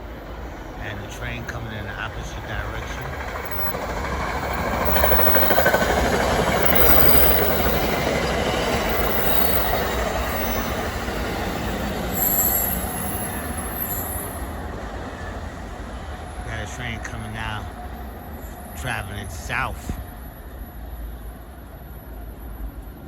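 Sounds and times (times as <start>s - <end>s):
train rumbling on rails: 0.0s - 23.0s
high-pitched wheel squeal: 4.8s - 14.5s.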